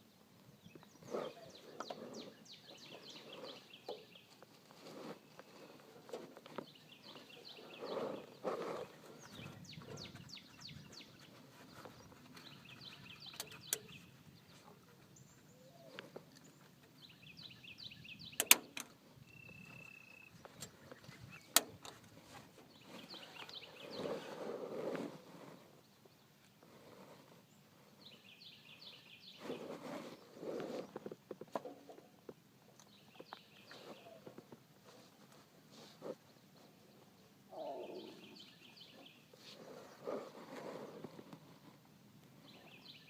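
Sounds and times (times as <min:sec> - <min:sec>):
sharp clicks: 0:18.4 - 0:19.0.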